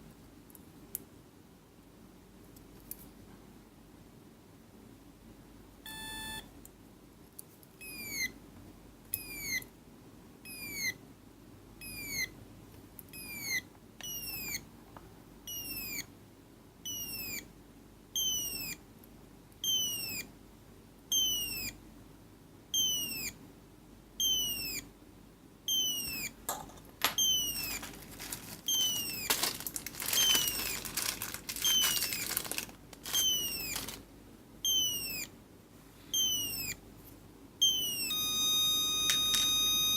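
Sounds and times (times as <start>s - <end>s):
electronic beep: 27.2s - 27.8s, 28.7s - 29.3s, 37.6s - 39.9s
electronic whistle-like chirps: 37.6s - 39.9s.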